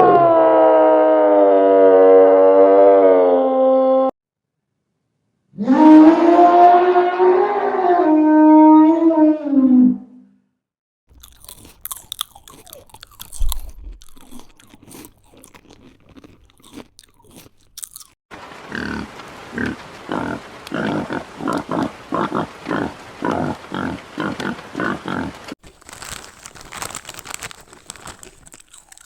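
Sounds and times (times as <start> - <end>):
animal crunching food: 11.1 - 19.0, 22.7 - 29.0
short chewing or grunting sounds: 11.1 - 29.0.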